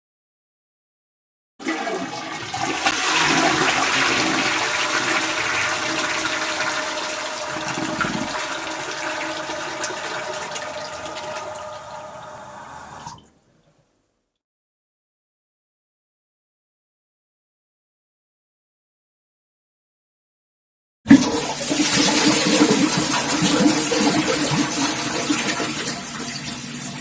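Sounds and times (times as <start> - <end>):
toilet flushing: 1.6 - 13.8, 21.1 - 27.0.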